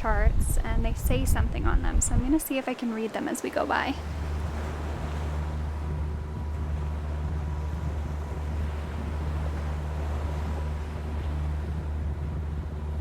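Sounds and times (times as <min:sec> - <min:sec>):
wind and water hissing: 0:00.0 - 0:13.0
boat diesel engine droning: 0:02.8 - 0:13.0.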